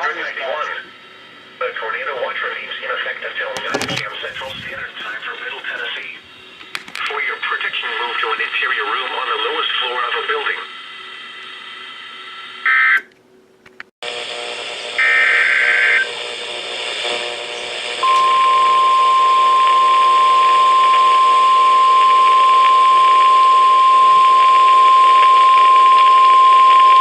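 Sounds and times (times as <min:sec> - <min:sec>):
radio hiss: 0:00.0 - 0:11.6, 0:14.1 - 0:18.3
warning alarm tone: 0:18.0 - 0:27.0.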